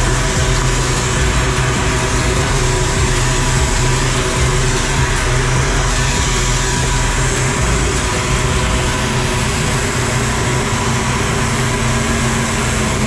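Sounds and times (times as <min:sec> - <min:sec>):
heavy machinery engine running: 0:00.0 - 0:13.0.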